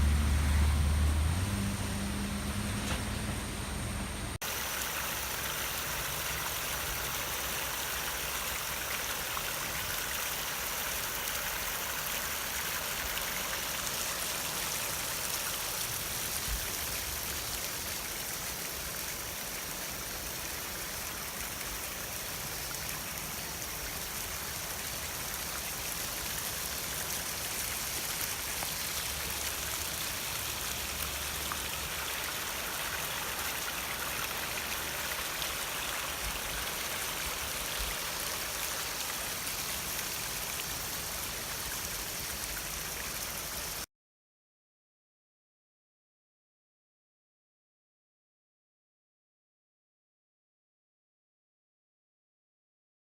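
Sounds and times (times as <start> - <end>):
low vehicle hum: 0.0 - 4.4
river rushing in flood: 4.4 - 43.8.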